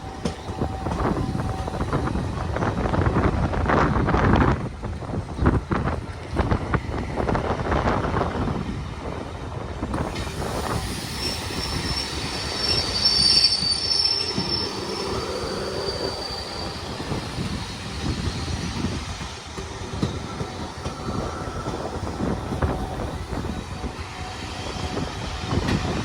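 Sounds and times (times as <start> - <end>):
train wheels squealing: 0.0 - 2.9, 10.0 - 26.0
wheels rumbling on rails: 0.0 - 26.0.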